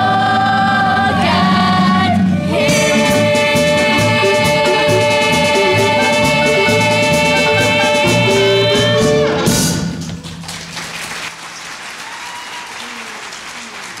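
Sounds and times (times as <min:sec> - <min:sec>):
musical accompaniment chord: 0:00.9 - 0:10.0
audience applause: 0:10.2 - 0:14.0.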